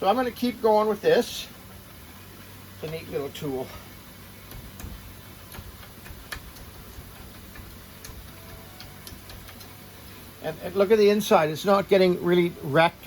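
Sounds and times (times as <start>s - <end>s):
fan hum: 0.0s - 13.0s.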